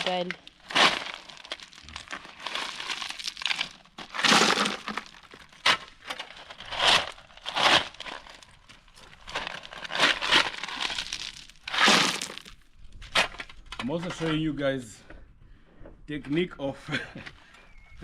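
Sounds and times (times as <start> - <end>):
crushed stone being scooped: 0.1 - 12.6.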